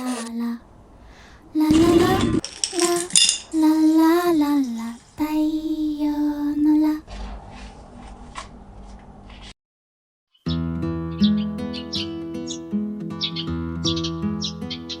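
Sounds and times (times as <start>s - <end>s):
woman humming: 1.6s - 2.4s
tableware clinking: 1.7s - 3.6s.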